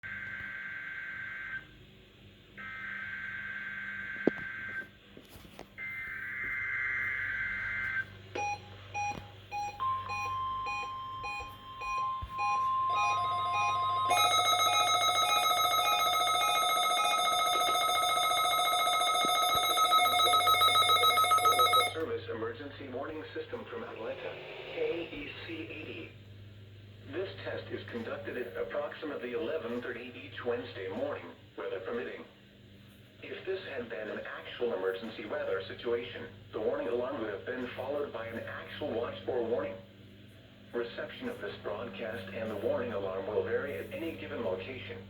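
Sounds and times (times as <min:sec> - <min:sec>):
loud electronic alarm: 0:00.0 - 0:01.7, 0:02.6 - 0:04.9, 0:05.8 - 0:08.5, 0:09.5 - 0:22.0
receiver beeping: 0:05.8 - 0:22.1
weather radio alarm tone: 0:09.7 - 0:22.1.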